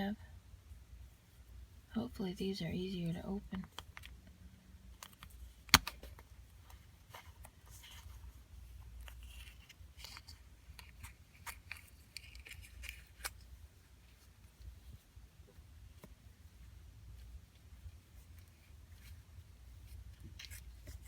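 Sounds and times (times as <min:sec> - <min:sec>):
plastic crinkling: 0:05.0 - 0:15.0.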